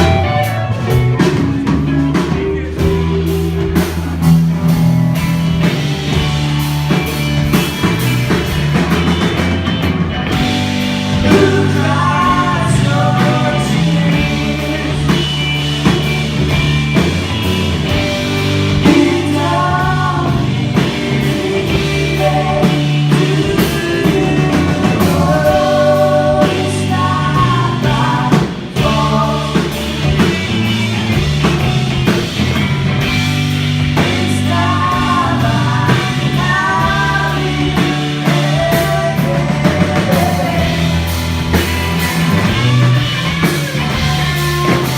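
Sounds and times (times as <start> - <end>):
bass line: 0.0 - 44.9
drums: 0.0 - 44.9
live rock band: 0.0 - 44.9
person singing: 11.1 - 16.5, 17.9 - 30.3, 33.9 - 44.9.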